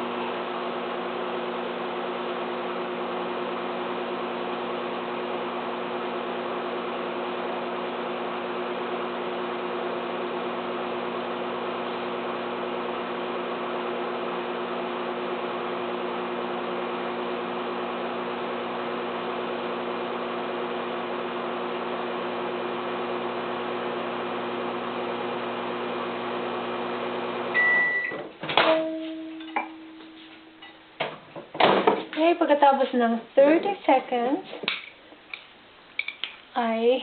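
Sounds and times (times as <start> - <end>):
microwave oven humming: 0.0 - 31.0
microwave beep: 27.5 - 30.2.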